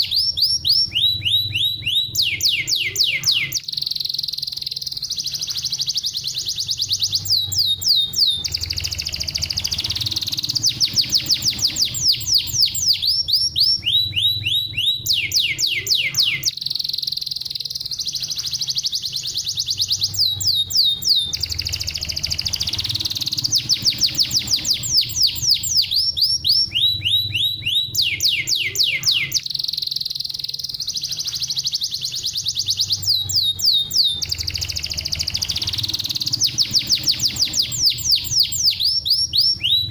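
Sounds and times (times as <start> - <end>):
canary singing trills: 0.0 - 39.9.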